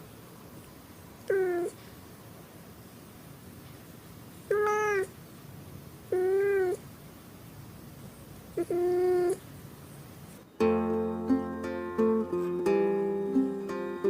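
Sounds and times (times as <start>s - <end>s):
cat meowing: 1.2s - 1.8s, 4.5s - 5.2s, 6.1s - 6.8s, 8.6s - 9.4s.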